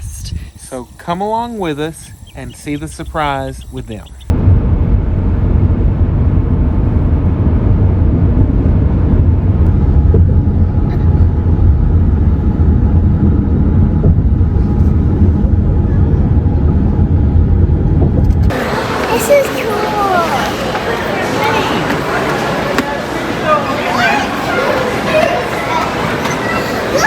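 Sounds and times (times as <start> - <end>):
car road and engine rumble: 4.1 - 18.7.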